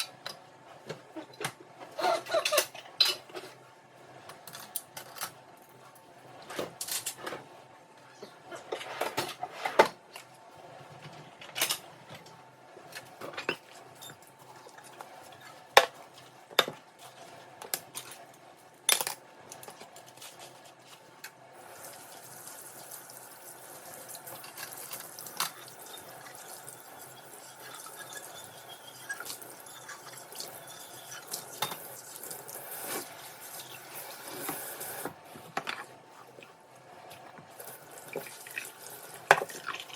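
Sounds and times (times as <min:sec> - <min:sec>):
dishes clinking in sink: 0:27.2 - 0:31.9.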